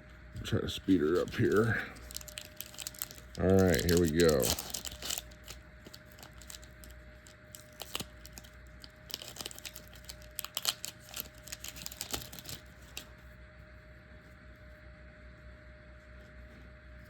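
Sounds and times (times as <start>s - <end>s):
foil wrapper tearing and crinkling: 0.8s - 13.1s
cards handled: 0.9s - 13.1s.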